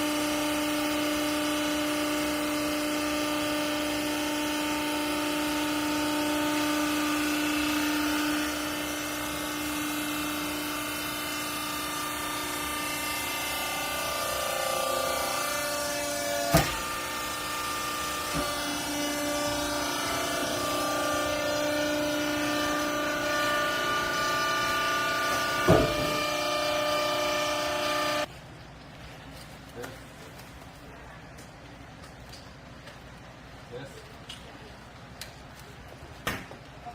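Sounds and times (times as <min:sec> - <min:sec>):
hydraulic pump whining: 0:00.0 - 0:28.3.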